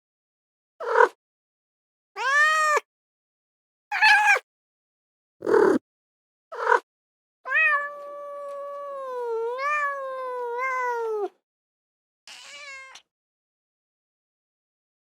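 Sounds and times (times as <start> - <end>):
cat meowing: 2.2 - 2.8, 3.9 - 4.4, 5.4 - 5.8, 7.5 - 11.3, 12.3 - 13.1.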